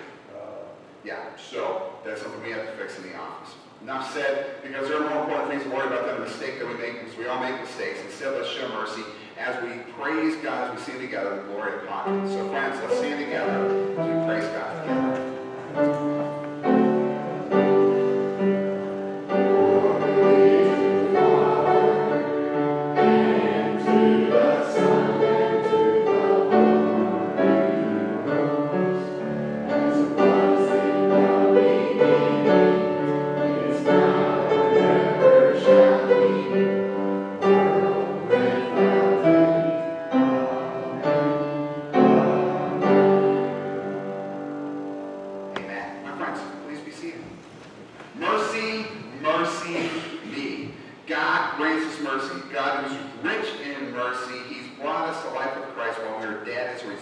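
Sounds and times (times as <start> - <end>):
piano: 4.4 - 57.0
group singing a hymn: 12.7 - 44.2.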